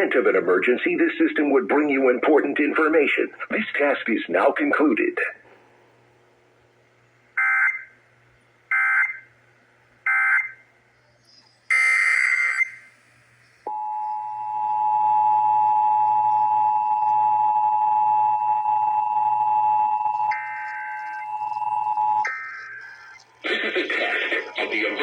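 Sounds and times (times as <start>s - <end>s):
digital data bursts: 11.3s - 13.6s, 22.1s - 25.0s.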